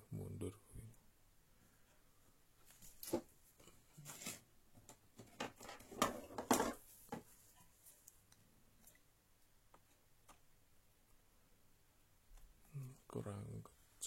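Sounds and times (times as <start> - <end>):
laptop parts scraping: 4.0 - 4.5.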